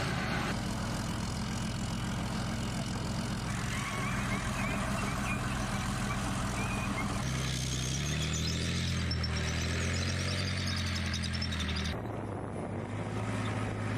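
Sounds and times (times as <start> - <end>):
heavy diesel engine revving: 0.0 - 13.9.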